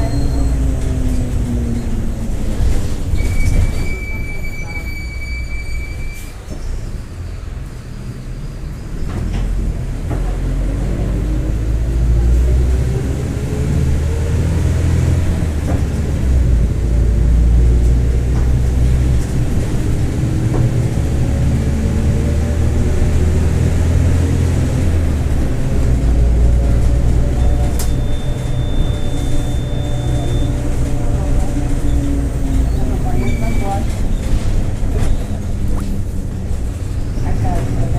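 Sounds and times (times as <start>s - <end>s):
bus diesel engine rumbling: 0.0s - 37.9s
high-pitched beep: 27.4s - 30.6s.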